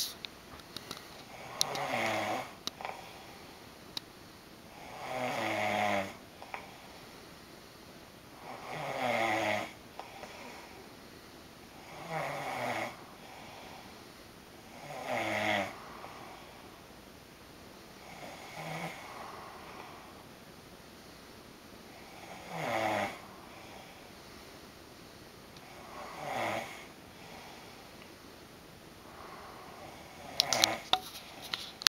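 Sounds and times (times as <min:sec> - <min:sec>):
man snoring: 0:01.3 - 0:03.2, 0:04.7 - 0:06.7, 0:08.3 - 0:10.7, 0:11.7 - 0:13.9, 0:14.7 - 0:16.8, 0:18.0 - 0:20.2, 0:21.9 - 0:24.0, 0:25.6 - 0:27.6, 0:29.0 - 0:30.8.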